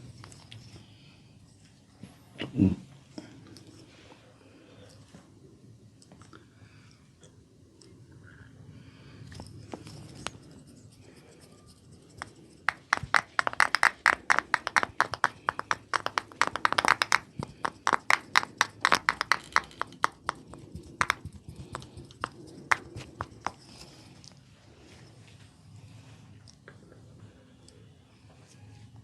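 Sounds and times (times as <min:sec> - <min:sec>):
hands tapping and slapping head: 0:12.2 - 0:23.6.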